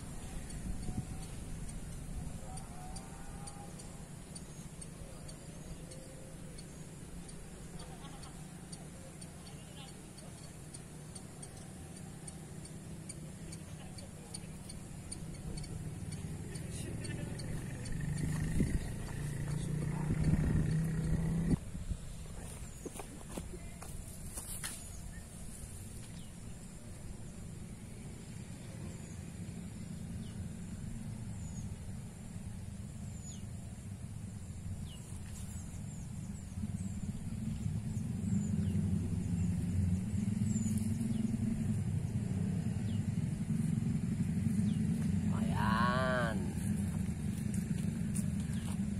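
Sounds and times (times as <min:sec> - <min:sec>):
wind rumbling on microphone: 0:00.0 - 0:02.4, 0:17.1 - 0:26.0, 0:34.4 - 0:48.9
faint even ticking: 0:00.0 - 0:21.6
small bird chirping: 0:00.0 - 0:21.6, 0:34.4 - 0:41.7.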